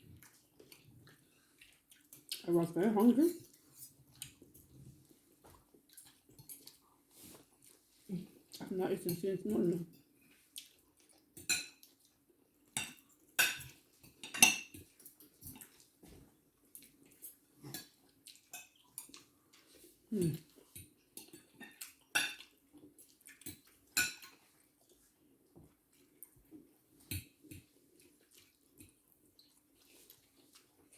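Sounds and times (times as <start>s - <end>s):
cutlery clinking on plates: 11.4s - 12.0s, 12.7s - 15.8s, 20.2s - 22.6s, 23.4s - 24.4s, 27.0s - 27.8s.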